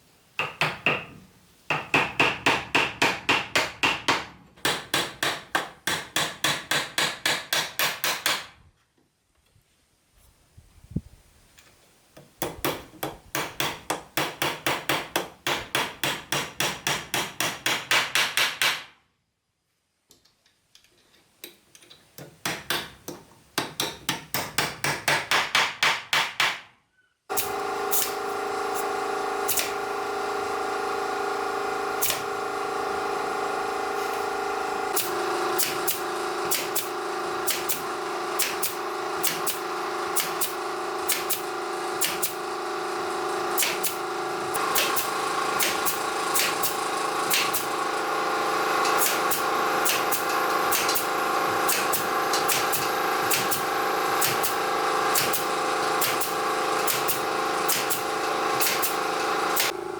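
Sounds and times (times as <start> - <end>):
hammering on wood: 0.4 - 8.6, 12.4 - 18.9, 22.2 - 26.7, 35.0 - 42.4, 44.6 - 47.7, 48.8 - 59.8
power tool motor running: 27.3 - 59.9.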